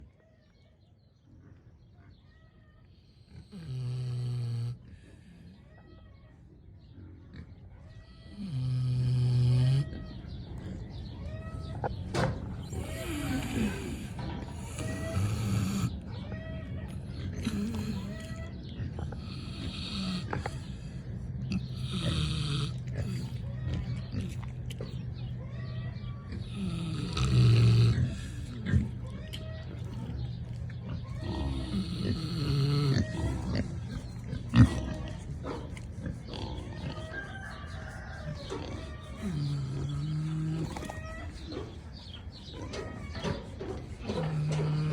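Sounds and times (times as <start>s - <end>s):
pig snoring: 3.0s - 5.6s, 7.3s - 11.0s, 11.8s - 16.2s, 16.9s - 25.3s, 26.0s - 44.9s
pig breathing: 11.8s - 44.9s.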